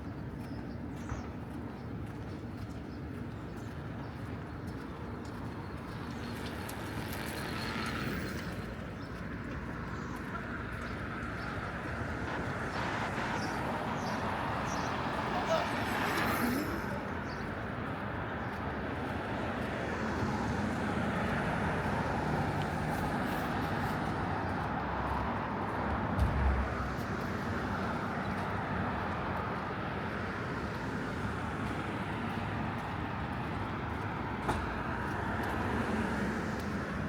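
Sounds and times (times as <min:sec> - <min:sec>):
road vehicles passing: 0:00.0 - 0:37.0
low thump: 0:26.2 - 0:27.0.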